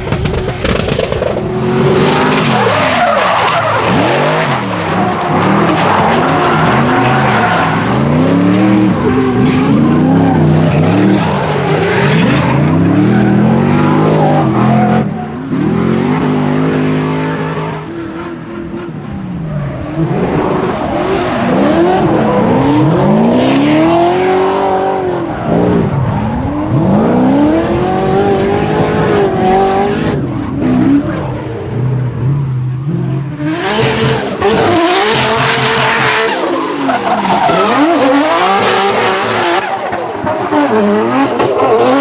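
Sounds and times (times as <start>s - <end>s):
car engines revving hard: 0.0s - 42.0s
tyres screeching: 33.3s - 39.8s.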